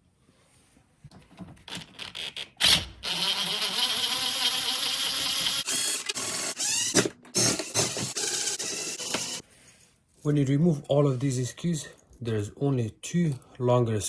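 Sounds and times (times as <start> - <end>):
drill click: 1.8 - 9.4
cordless drill motor whine: 2.6 - 9.4.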